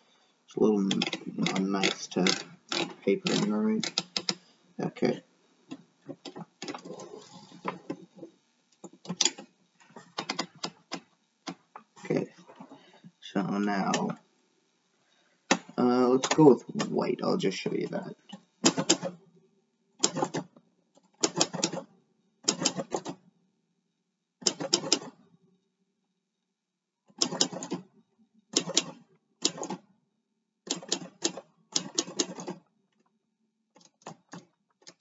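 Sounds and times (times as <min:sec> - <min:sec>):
manual typewriter typing: 0:00.8 - 0:04.4, 0:21.2 - 0:21.8, 0:24.4 - 0:25.1, 0:30.7 - 0:32.6.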